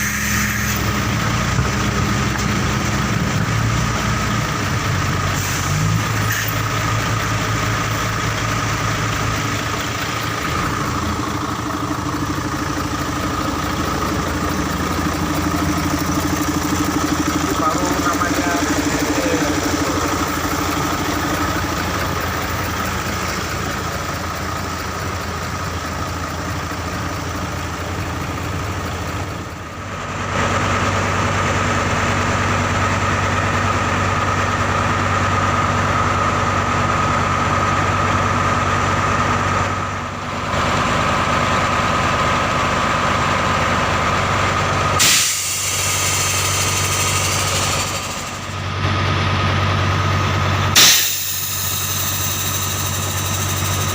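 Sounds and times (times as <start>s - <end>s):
diesel truck engine running: 0.0s - 53.9s
loud air hiss: 45.0s - 48.2s, 50.8s - 53.6s.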